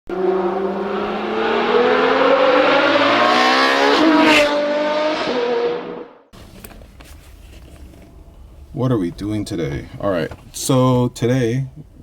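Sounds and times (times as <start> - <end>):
car engine accelerating hard: 0.1 - 6.2.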